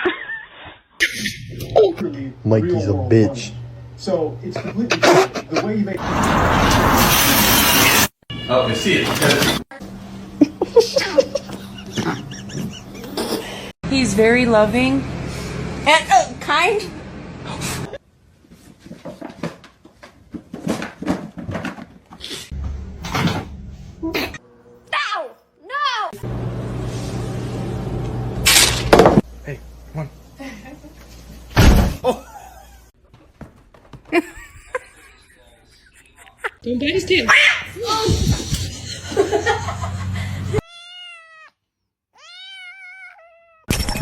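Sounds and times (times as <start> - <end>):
cat meowing: 40.6 - 41.6, 42.2 - 43.7.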